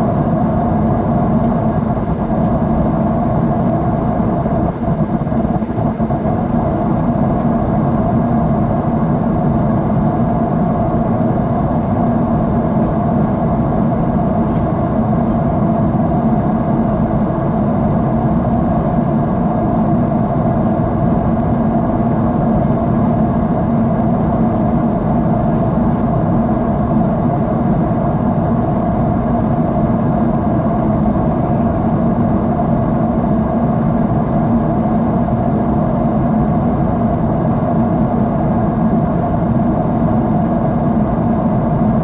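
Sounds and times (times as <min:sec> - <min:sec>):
airliner cabin engine drone: 0:00.0 - 0:42.0.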